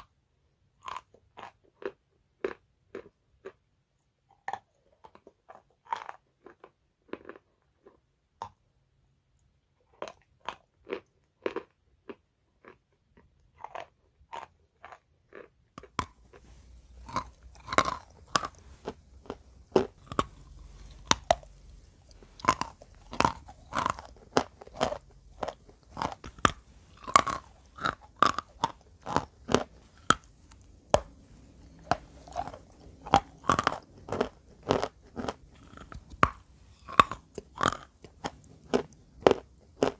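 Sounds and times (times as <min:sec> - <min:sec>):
chalk being chewed: 0:10.0 - 0:39.9.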